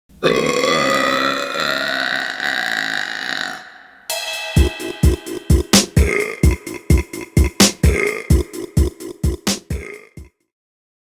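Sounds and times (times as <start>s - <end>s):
woman burping: 0.2s - 3.6s.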